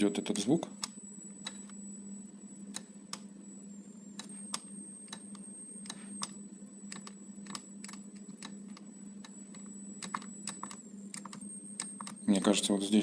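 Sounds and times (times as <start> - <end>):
high-pitched electronic whine: 8.9 - 13.0.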